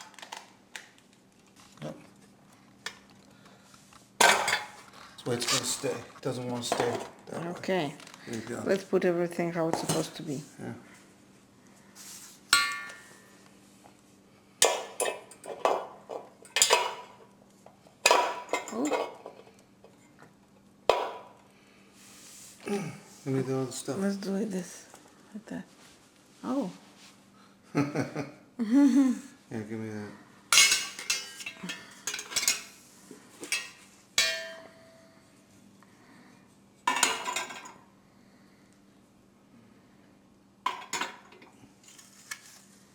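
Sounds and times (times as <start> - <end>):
metal fireplace tools clanking: 12.6 - 13.2, 30.6 - 32.7, 33.4 - 34.8
metallic ring: 12.6 - 13.4, 34.2 - 35.2.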